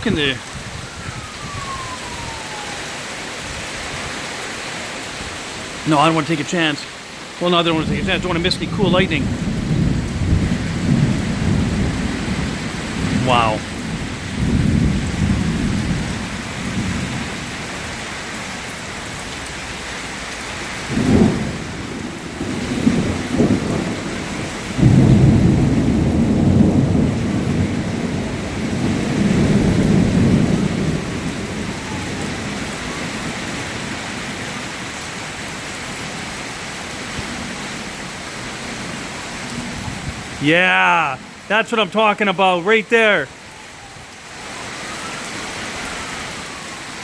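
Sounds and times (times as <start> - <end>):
steady rain: 0.0 - 47.0
thunder: 9.2 - 17.3, 20.9 - 32.7.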